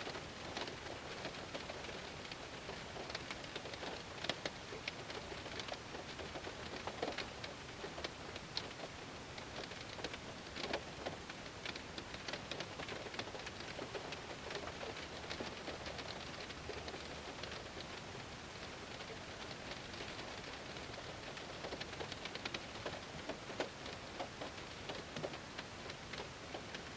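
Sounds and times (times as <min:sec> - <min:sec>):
heavy rain on a car: 0:00.0 - 0:26.9.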